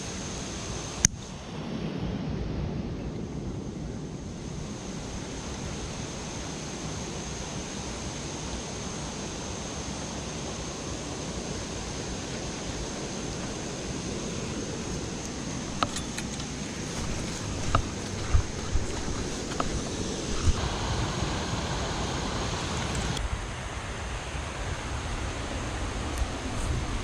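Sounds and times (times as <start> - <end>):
stream water rushing: 0.0 - 2.1, 4.2 - 27.0.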